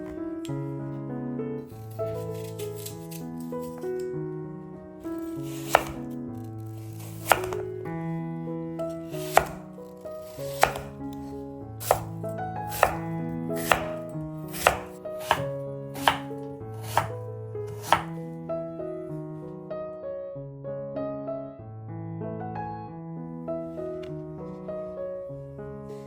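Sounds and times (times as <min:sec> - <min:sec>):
soft piano music: 0:00.0 - 0:26.0
knife chopping on cutting board: 0:05.4 - 0:06.1, 0:07.0 - 0:07.7, 0:09.2 - 0:09.7, 0:10.3 - 0:11.0, 0:11.8 - 0:17.2, 0:17.8 - 0:18.2.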